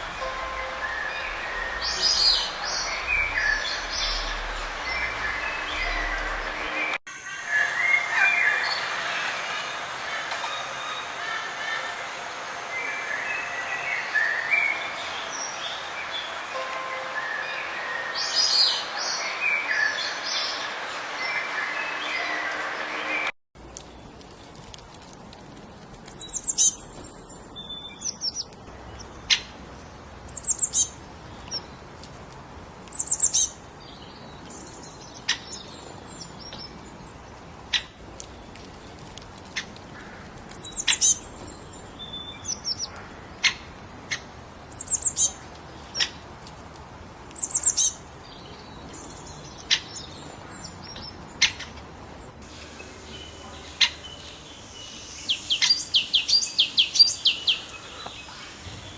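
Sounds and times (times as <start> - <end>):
songbirds chirping: 0.0 - 58.9
steady background hiss: 25.2 - 58.9.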